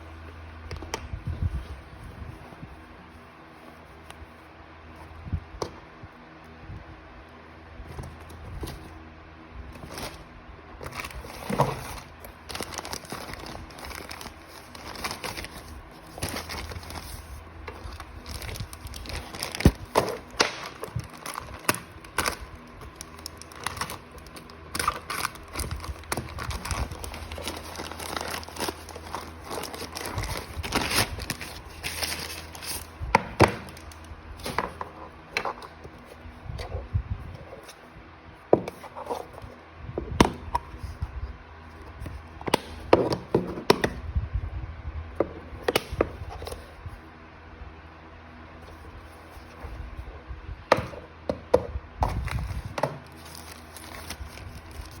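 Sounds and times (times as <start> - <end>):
low steady hum: 0.0 - 55.0
packaging crinkling and tearing: 9.7 - 34.8, 52.0 - 55.0.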